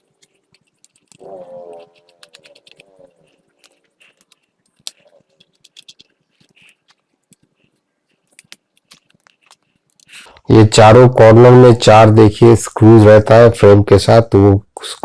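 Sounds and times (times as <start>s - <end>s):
screwdriver clicking and scraping metal: 0.0s - 7.5s.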